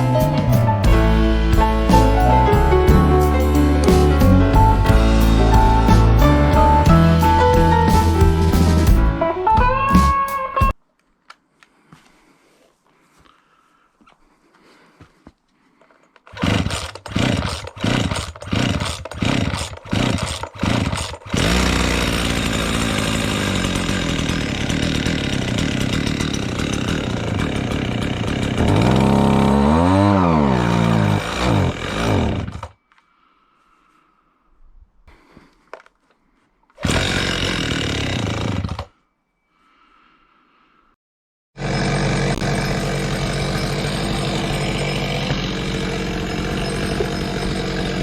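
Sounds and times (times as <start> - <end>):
two-stroke engine revving: 16.4 - 32.7, 36.8 - 38.9, 41.6 - 48.0.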